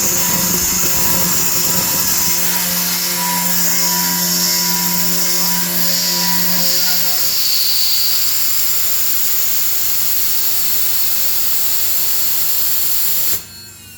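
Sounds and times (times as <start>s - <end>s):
low humming tone: 0.0s - 7.4s
milling machine spindle whine: 0.0s - 10.9s.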